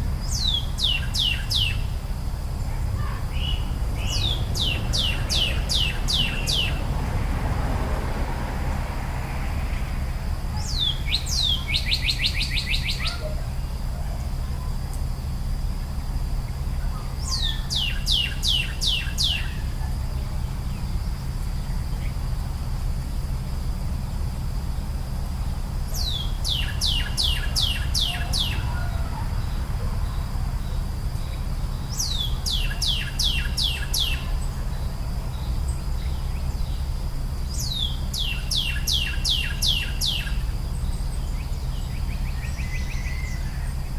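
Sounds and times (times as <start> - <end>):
low background rumble: 0.0 - 43.9
songbird singing: 0.0 - 43.9.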